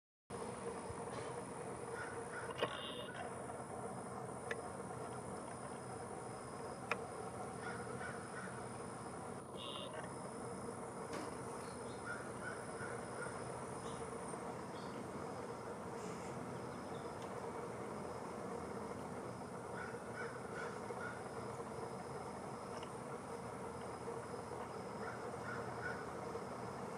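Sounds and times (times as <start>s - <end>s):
steady outdoor hiss: 0.3s - 26.9s
harsh bird calls: 1.0s - 3.4s, 7.2s - 10.1s, 11.5s - 26.4s
faint bird chirps: 1.1s - 3.4s, 9.5s - 10.0s, 11.6s - 18.2s.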